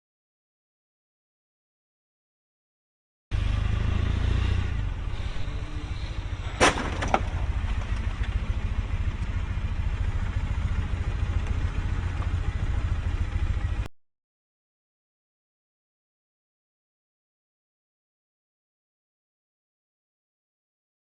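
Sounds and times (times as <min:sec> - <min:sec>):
traffic rumble: 0:03.3 - 0:13.9
vehicle collision crash: 0:06.4 - 0:08.3.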